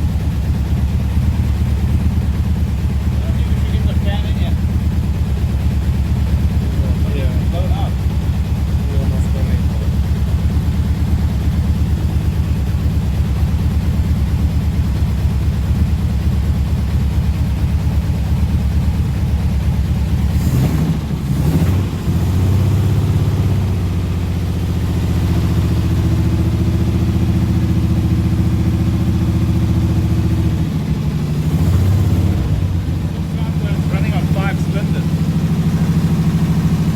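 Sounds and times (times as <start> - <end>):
car engine running: 0.0 - 36.9.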